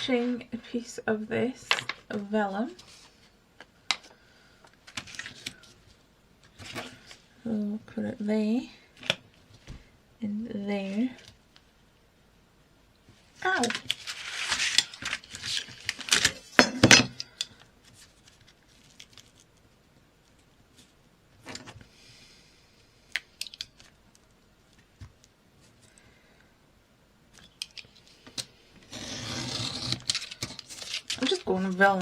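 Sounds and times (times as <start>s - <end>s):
paper rustling and sliding: 13.9s - 16.5s.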